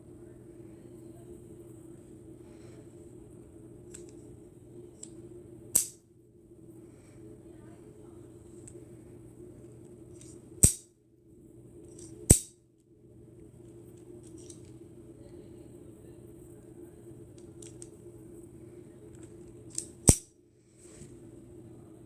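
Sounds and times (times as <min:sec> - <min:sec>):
toy revolver mechanism snapping: 0:05.8 - 0:06.0, 0:10.2 - 0:10.9, 0:11.9 - 0:12.6, 0:17.4 - 0:17.9, 0:19.2 - 0:20.3.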